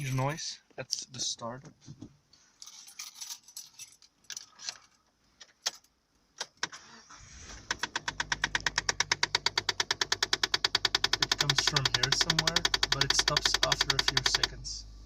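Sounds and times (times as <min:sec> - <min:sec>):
car engine starting and idling: 0:06.6 - 0:15.0
rapid ticking under dashboard: 0:07.6 - 0:14.8.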